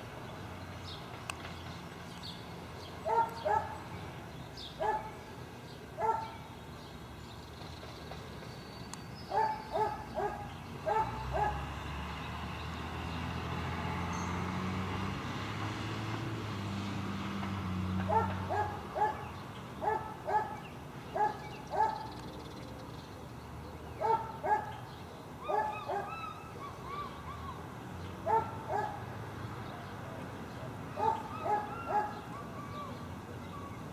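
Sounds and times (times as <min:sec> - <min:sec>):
dogs barking: 0:03.0 - 0:03.8, 0:04.8 - 0:05.2, 0:06.0 - 0:06.5, 0:09.3 - 0:11.7, 0:18.1 - 0:22.1, 0:24.0 - 0:26.4, 0:28.2 - 0:29.1, 0:30.9 - 0:32.5.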